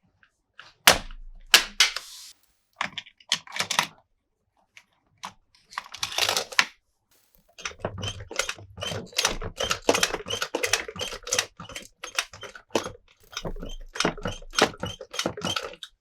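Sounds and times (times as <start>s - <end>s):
plastic toy parts clicking: 7.5s - 16.0s.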